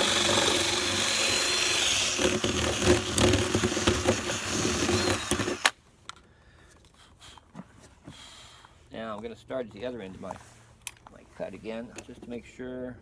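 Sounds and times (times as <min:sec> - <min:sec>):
power drill boring into wood: 0:00.0 - 0:05.7.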